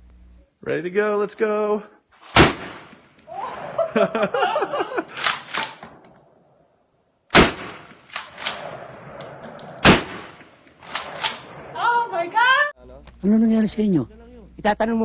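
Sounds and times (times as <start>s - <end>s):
loud gunshots: 2.2s - 3.1s, 7.3s - 9.2s, 9.8s - 11.7s
people laughing: 3.4s - 5.3s
voices: 11.0s - 15.0s.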